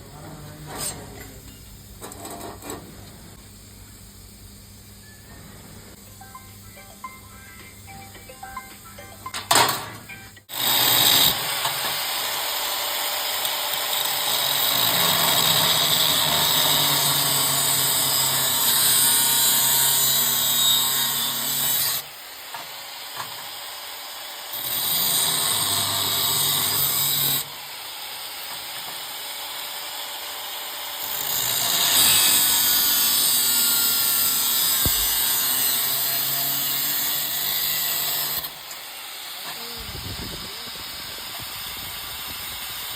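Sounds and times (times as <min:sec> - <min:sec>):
angle grinder cutting steel: 0:10.5 - 0:42.9.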